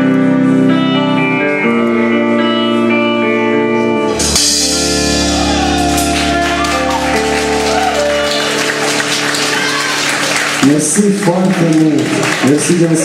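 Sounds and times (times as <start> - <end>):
keyboard and guitar chords: 0.0 - 13.0
live pop band music: 0.0 - 13.0
deep bass: 2.0 - 9.8.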